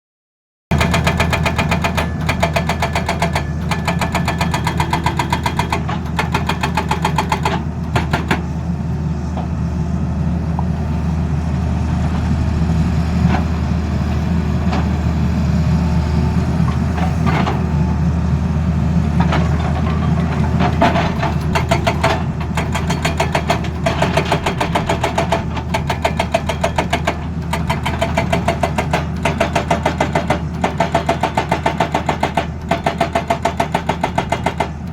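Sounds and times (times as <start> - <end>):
hydraulic breaker hammering: 0.7 - 8.6, 19.3 - 34.9
excavator diesel engine droning: 0.7 - 34.9.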